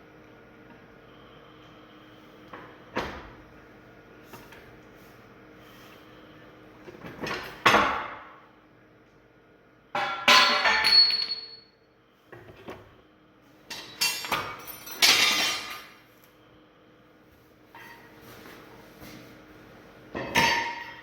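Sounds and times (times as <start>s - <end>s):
metallic ring: 10.3s - 11.8s.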